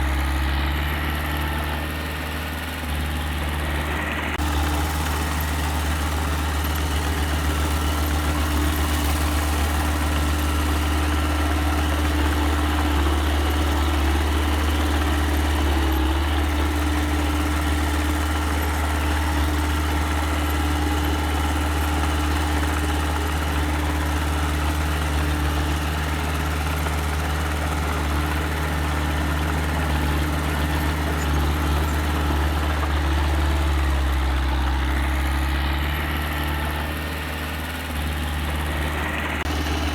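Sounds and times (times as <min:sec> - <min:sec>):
earthmoving machine engine running: 0:00.0 - 0:39.9.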